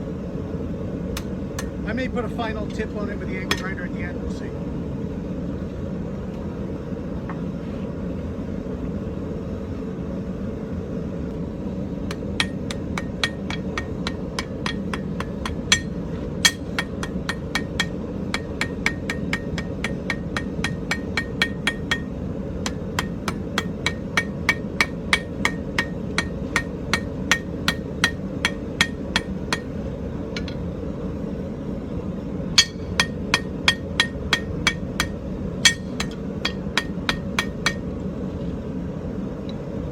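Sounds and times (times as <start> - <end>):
hammer striking iron on anvil: 1.2 - 1.8, 3.4 - 3.7, 12.1 - 30.6, 32.6 - 37.9.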